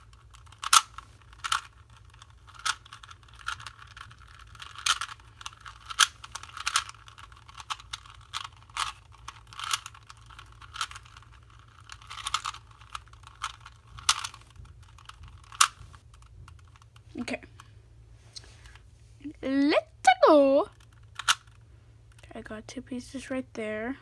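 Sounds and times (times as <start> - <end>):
puzzle cube clacking: 0.0 - 17.8, 20.0 - 22.3.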